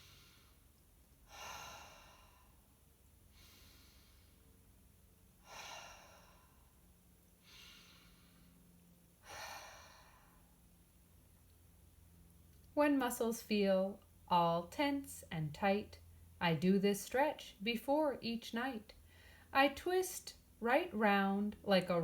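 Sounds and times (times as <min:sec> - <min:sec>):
person breathing deeply: 0:00.0 - 0:02.7, 0:03.3 - 0:04.6, 0:05.4 - 0:06.8, 0:07.4 - 0:10.6, 0:19.1 - 0:19.5.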